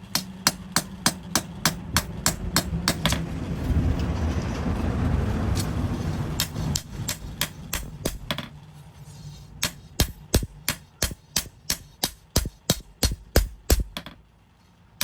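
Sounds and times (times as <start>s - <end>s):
hammer striking steel on anvil: 0.0s - 3.2s, 6.4s - 8.5s, 9.6s - 14.2s
steady rushing noise: 0.0s - 12.5s.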